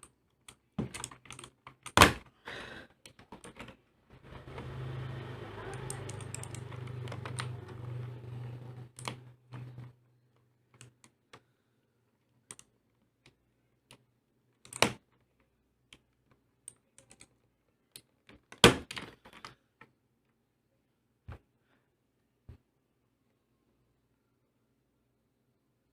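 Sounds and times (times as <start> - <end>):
plastic keyboard clicks and clacks: 0.0 - 2.3, 3.0 - 3.8, 5.7 - 7.5, 14.6 - 15.2.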